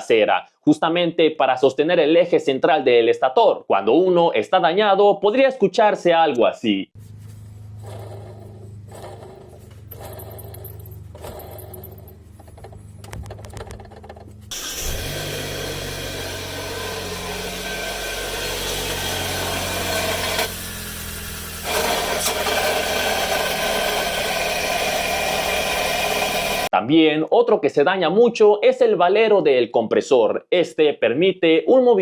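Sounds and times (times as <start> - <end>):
low hum: 7.0 - 22.2
car engine running: 7.0 - 26.7.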